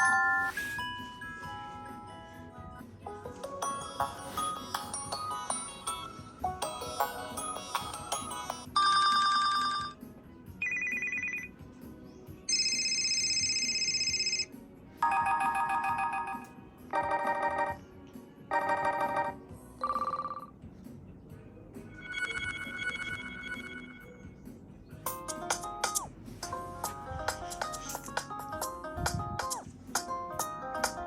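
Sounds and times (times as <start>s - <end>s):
trilling electronic phone ringtones: 0.0s - 1.6s, 3.5s - 10.0s, 10.6s - 11.5s, 12.5s - 17.8s, 18.5s - 20.5s, 21.9s - 24.3s
chiming melody: 0.0s - 9.9s, 12.5s - 16.5s.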